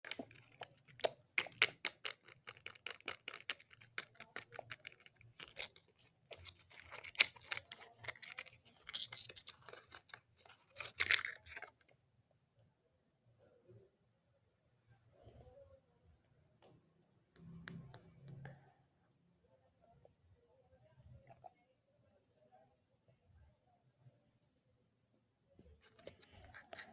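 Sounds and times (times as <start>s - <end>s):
scratchy rustling: 0.1s - 11.7s.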